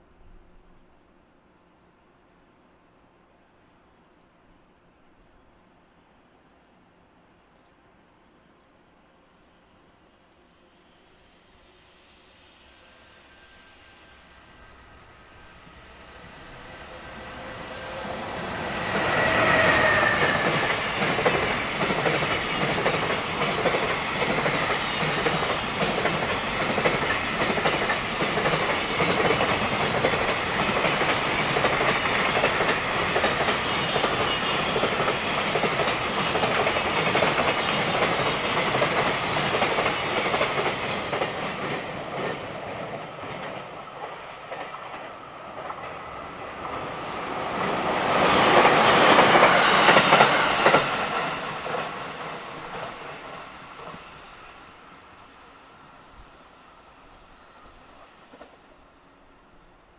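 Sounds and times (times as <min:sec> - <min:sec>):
train wheels clickety-clack: 0:15.6 - 0:54.5, 0:57.6 - 0:58.7.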